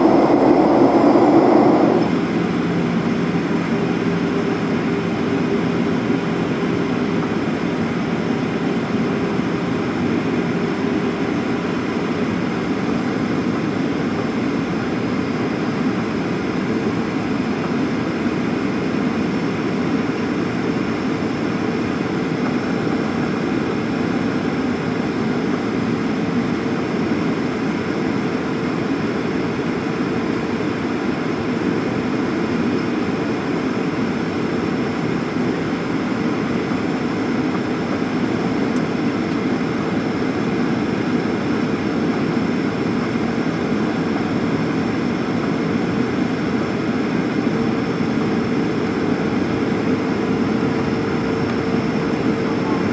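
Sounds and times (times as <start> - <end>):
jet engines humming: 0.0 - 4.1, 47.0 - 52.9
rush of air in aircraft cabin: 0.0 - 4.4, 48.9 - 52.9.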